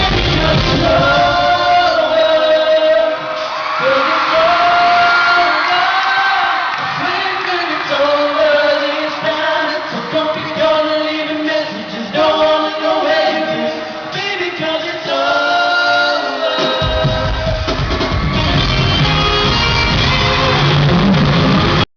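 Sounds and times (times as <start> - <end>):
man singing long notes: 0.0 - 17.7
live pop song with band: 0.0 - 21.8.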